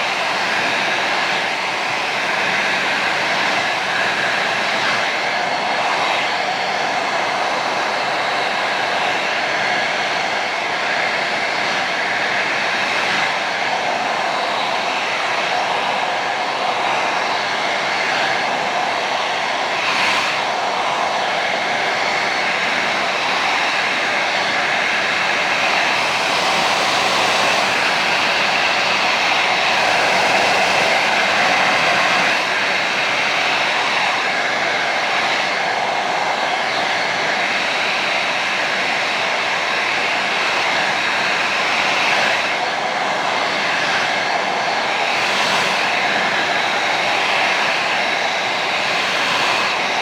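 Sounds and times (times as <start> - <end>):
hair dryer blowing air: 0.0 - 50.0
hair dryer motor whine: 0.0 - 50.0.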